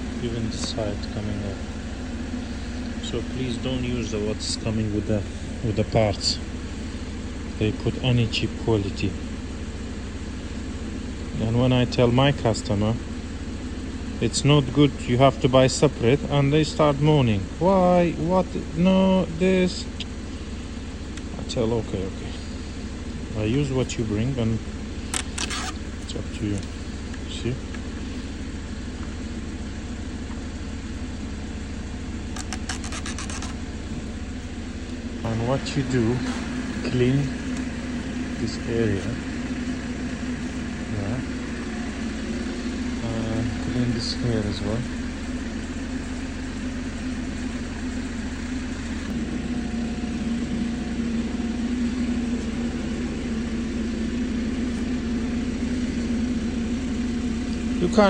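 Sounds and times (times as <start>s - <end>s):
low mechanical drone: 0.0s - 58.0s
machine engine humming: 0.0s - 58.0s
sharp clicks: 25.2s - 25.8s, 32.4s - 33.6s.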